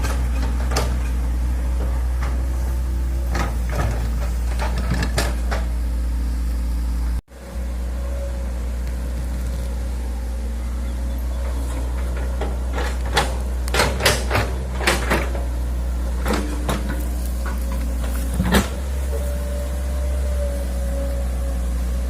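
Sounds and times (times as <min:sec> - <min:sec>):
excavator diesel engine running: 0:00.0 - 0:22.0
sharp metal clanks and knocks: 0:12.0 - 0:15.4.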